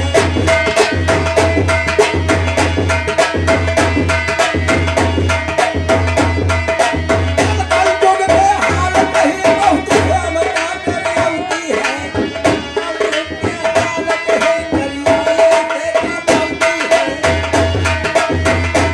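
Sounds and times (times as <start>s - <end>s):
held melody line: 0.0s - 18.9s.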